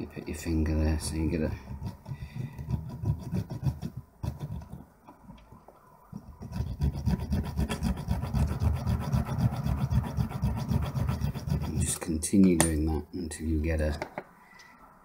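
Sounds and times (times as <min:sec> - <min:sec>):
needle file rasping on metal: 0:01.0 - 0:04.8, 0:06.4 - 0:12.1.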